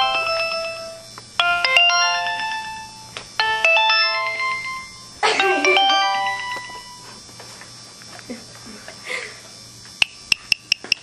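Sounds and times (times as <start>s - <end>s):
mobile phone ringtone: 0.0s - 7.1s.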